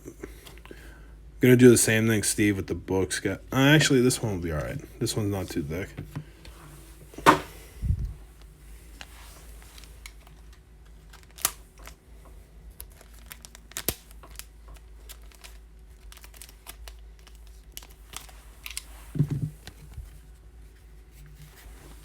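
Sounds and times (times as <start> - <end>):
cards crinkling in plastic holders: 8.4 - 20.3.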